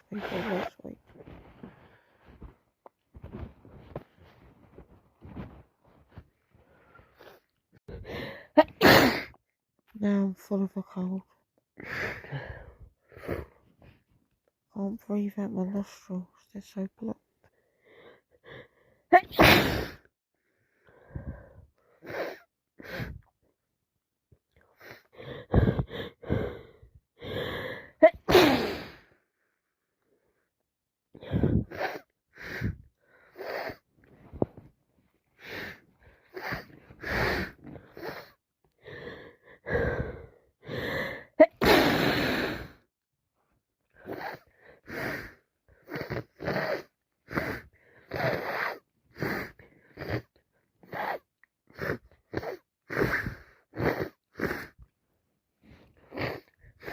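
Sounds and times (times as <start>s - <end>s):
woman sneezing: 8.6s - 9.4s, 19.2s - 20.0s, 28.0s - 28.9s, 41.4s - 42.4s
gasping in-breaths: 24.7s - 28.0s, 31.2s - 33.8s, 35.4s - 41.4s.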